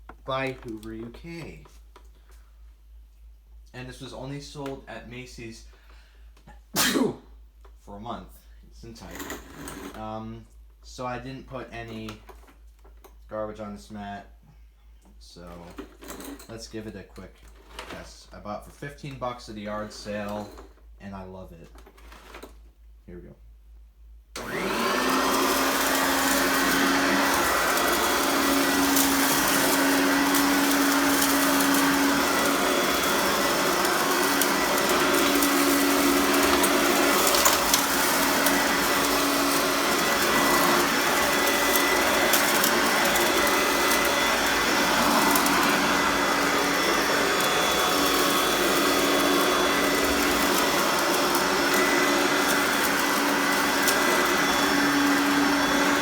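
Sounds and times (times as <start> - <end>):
vacuum cleaner running: 24.4 - 56.0.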